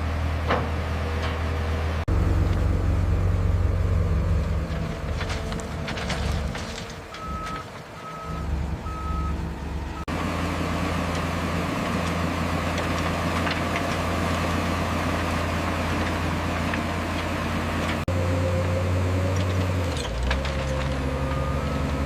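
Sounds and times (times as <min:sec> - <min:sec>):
diesel engine droning: 0:00.0 - 0:22.0
reversing alarm beeping: 0:07.1 - 0:10.1, 0:21.3 - 0:21.9.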